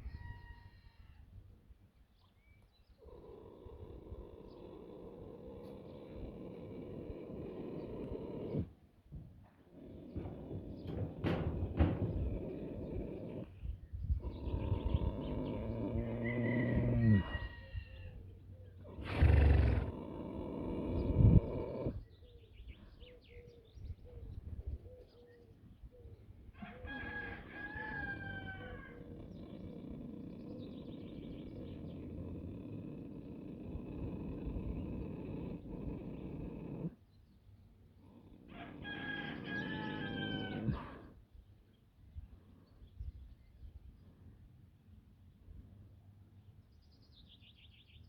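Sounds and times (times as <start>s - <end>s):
rooster crowing: 0.0s - 1.3s, 15.8s - 18.2s, 26.6s - 29.2s, 38.5s - 41.0s
horse snoring breath: 2.9s - 17.6s, 18.8s - 22.1s, 27.2s - 37.1s, 37.9s - 41.2s.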